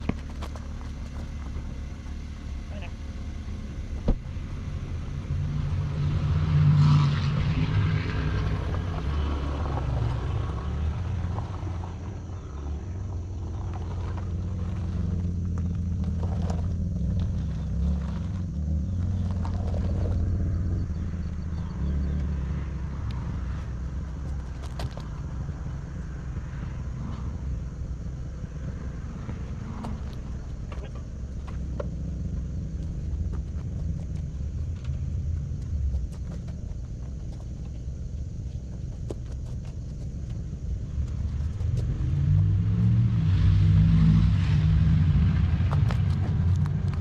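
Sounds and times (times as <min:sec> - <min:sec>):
low exhaust rumble: 0:00.0 - 0:47.0.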